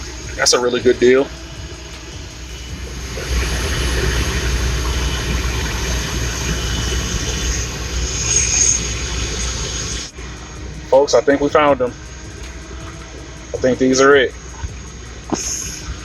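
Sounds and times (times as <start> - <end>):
vehicle engine rumbling: 0.0 - 16.0.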